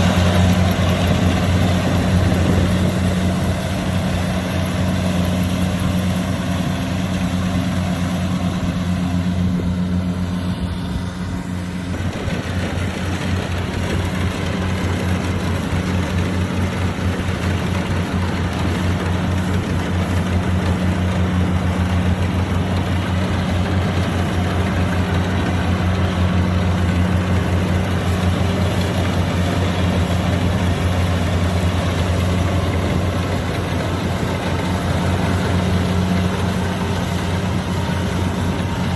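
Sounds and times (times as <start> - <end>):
diesel engine running under load: 0.0 - 38.9.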